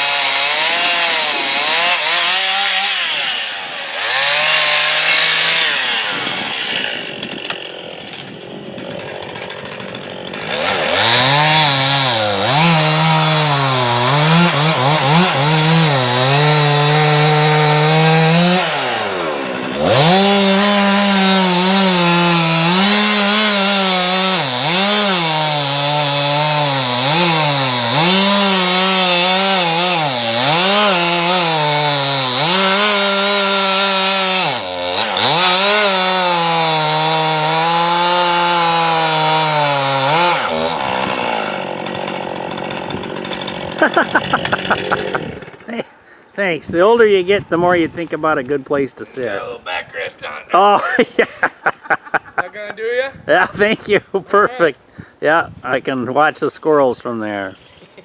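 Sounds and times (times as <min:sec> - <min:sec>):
chainsaw cutting into stump: 0:00.0 - 0:45.8.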